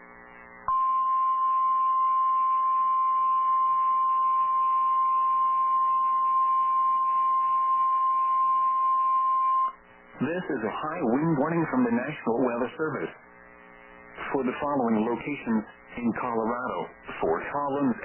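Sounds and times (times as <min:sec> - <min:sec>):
faint radio hiss: 0:00.0 - 0:00.7, 0:09.7 - 0:18.0
steady warning alarm tone: 0:00.7 - 0:09.8.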